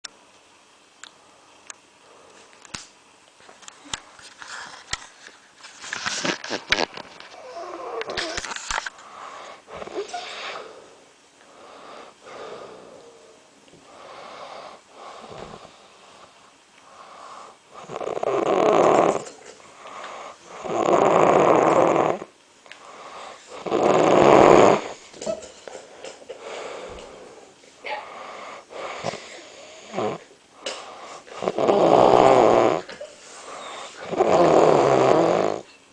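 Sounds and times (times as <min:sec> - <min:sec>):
person snoring: 0:17.0 - 0:19.4, 0:20.0 - 0:22.3, 0:22.9 - 0:25.0, 0:28.2 - 0:35.7.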